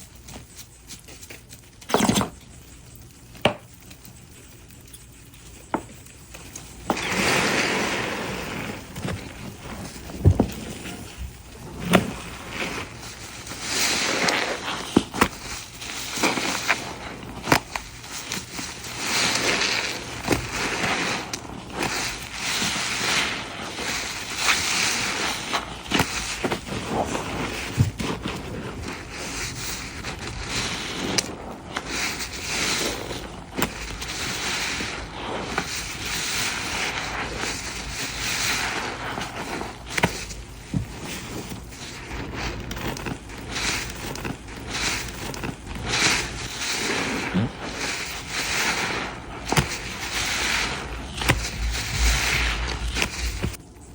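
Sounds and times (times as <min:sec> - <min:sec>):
soapy sponge squishing: 0:06.9 - 0:53.9.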